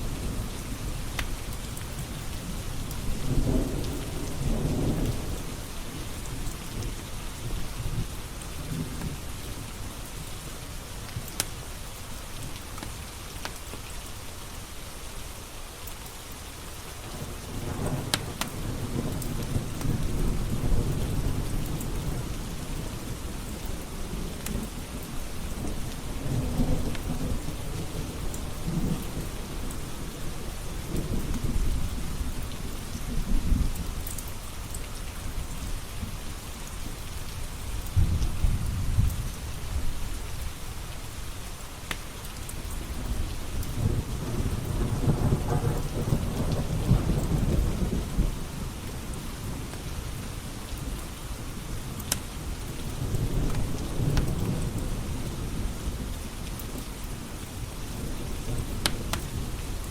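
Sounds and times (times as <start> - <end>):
heavy rain: 0.0 - 59.9
rolling thunder: 38.0 - 40.0, 43.0 - 48.8
wood fire crackling: 41.5 - 42.7, 58.1 - 59.9.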